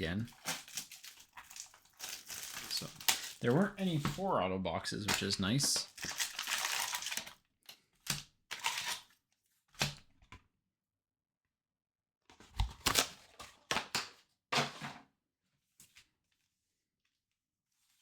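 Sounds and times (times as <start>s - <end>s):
packaging rustling and tearing: 0.3s - 4.2s, 5.1s - 7.4s, 8.5s - 9.1s.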